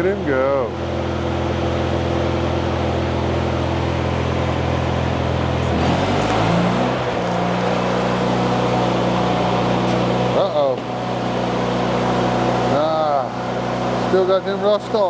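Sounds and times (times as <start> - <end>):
engine running: 0.0 - 15.0
welding arc crackling: 5.6 - 9.9.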